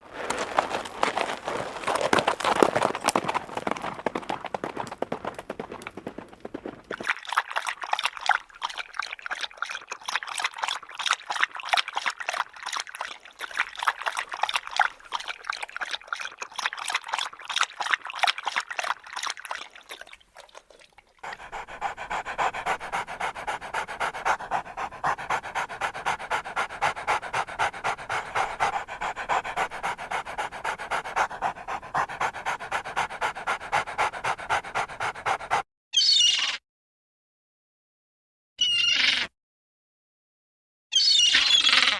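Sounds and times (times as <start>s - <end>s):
dog panting: 7.0s - 35.6s.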